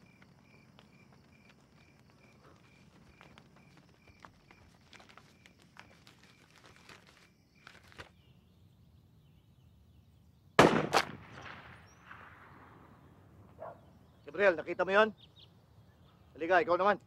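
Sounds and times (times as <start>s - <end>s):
faint open-air background: 0.0s - 17.0s
gunshot with echo: 10.6s - 12.8s.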